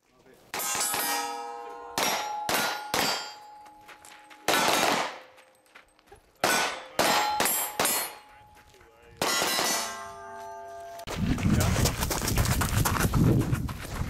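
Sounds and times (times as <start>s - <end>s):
steel plate clanging: 0.6s - 4.8s, 6.4s - 8.3s, 9.2s - 11.1s
gunshots: 2.0s - 3.4s, 4.5s - 5.3s, 6.4s - 8.2s, 9.2s - 10.0s.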